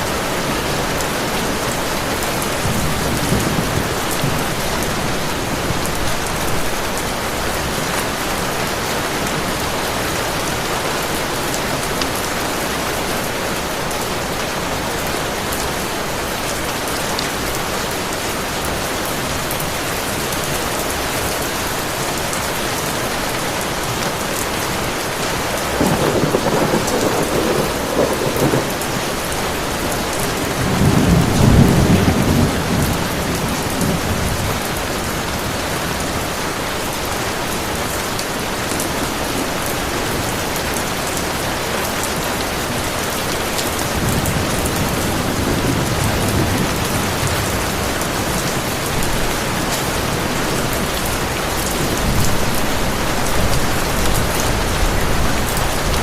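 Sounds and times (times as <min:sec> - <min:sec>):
heavy rain falling: 0:00.0 - 0:56.0
thunder rolling: 0:01.7 - 0:07.6, 0:25.7 - 0:35.4.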